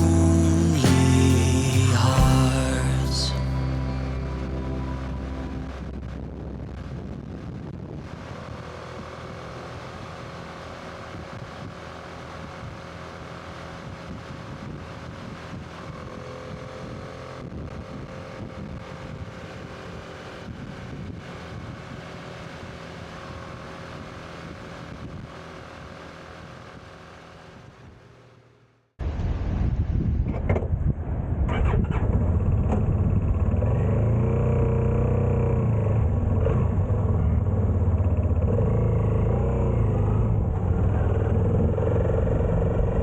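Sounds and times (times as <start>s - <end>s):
motorcycle engine running: 33.2s - 43.0s.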